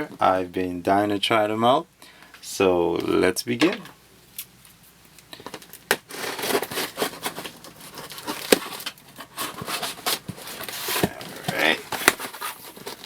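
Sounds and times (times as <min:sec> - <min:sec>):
packaging rustling and tearing: 0:05.3 - 0:13.0.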